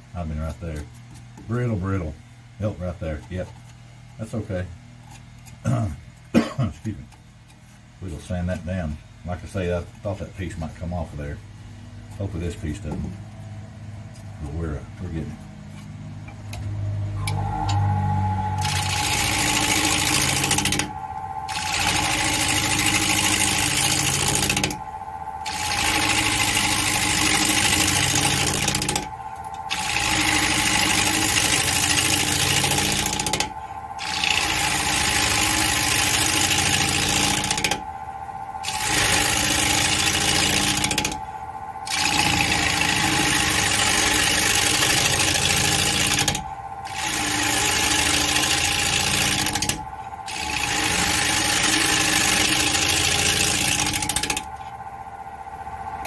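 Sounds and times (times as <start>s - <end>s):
lathe motor tone: 12.0s - 56.0s
gouge scraping wood: 34.0s - 37.6s, 38.7s - 40.9s, 41.9s - 49.6s, 50.3s - 54.2s.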